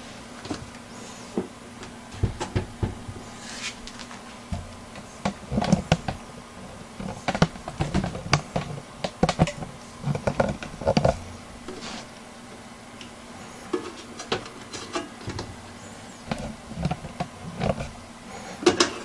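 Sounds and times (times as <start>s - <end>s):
computer case parts clicking and knocking: 2.1s - 3.2s, 4.5s - 6.2s, 7.0s - 11.2s, 16.3s - 18.0s.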